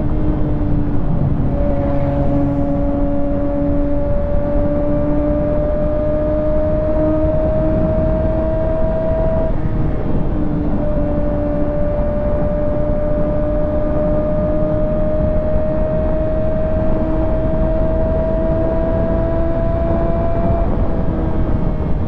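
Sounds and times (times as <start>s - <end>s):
wind rushing: 0.2s - 5.6s.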